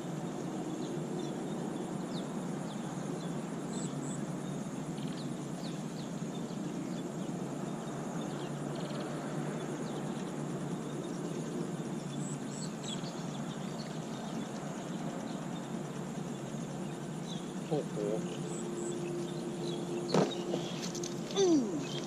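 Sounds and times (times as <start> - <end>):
high-pitched insect drone: 0.0 - 22.0
low background noise: 0.0 - 22.0
bird chirps: 17.2 - 22.0.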